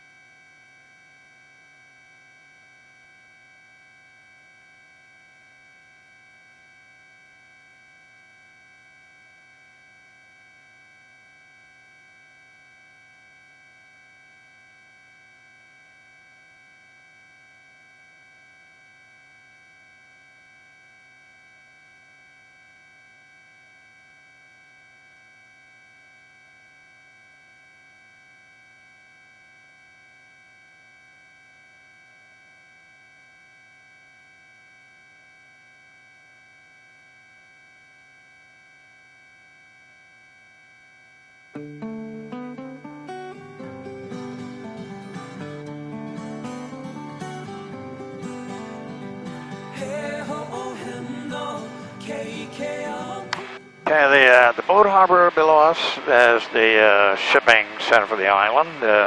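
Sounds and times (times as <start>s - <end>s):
high whine tones: 31.3s - 59.0s
faint electrical hum: 49.9s - 59.0s.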